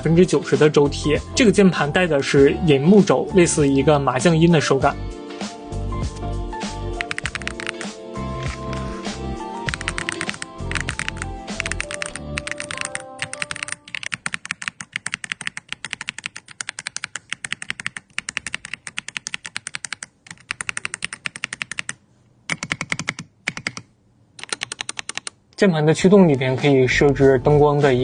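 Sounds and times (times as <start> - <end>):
mechanical keyboard typing: 7.0 - 8.9, 9.7 - 25.4.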